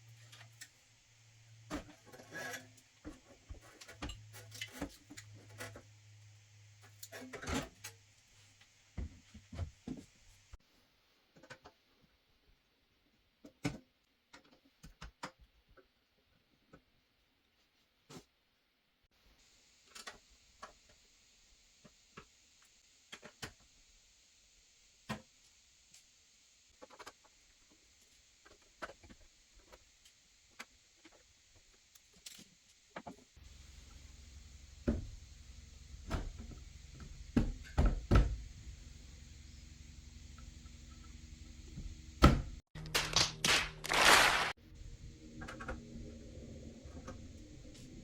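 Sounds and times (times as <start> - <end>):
steady low hum: 33.4 - 48.0.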